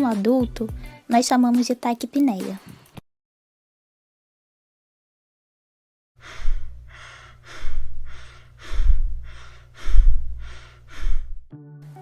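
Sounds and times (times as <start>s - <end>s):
fast breathing: 6.2s - 11.5s
low steady hum: 6.2s - 12.0s.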